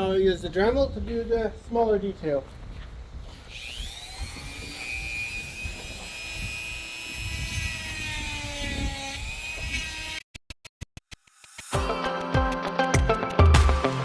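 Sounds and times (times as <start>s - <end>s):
rotary tool whining: 3.2s - 10.3s
rotary tool stuttering: 3.3s - 11.7s.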